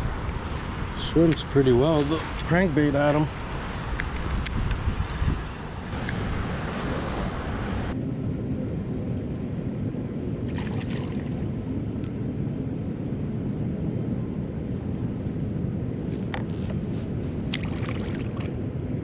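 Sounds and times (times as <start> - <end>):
wind rumbling on microphone: 0.0 - 19.0
water moving along hull: 5.9 - 8.0, 8.6 - 11.8, 16.2 - 19.0.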